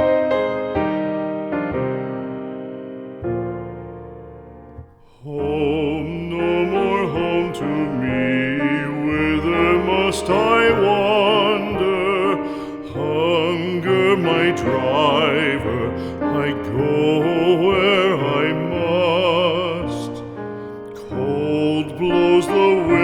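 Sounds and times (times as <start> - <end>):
piano: 0.0 - 23.0
person singing with vibrato: 5.0 - 23.0.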